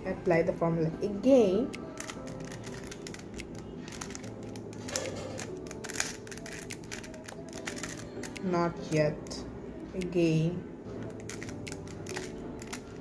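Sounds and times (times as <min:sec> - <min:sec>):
puzzle cube twisting clicks: 0:01.7 - 0:08.5, 0:11.0 - 0:13.0.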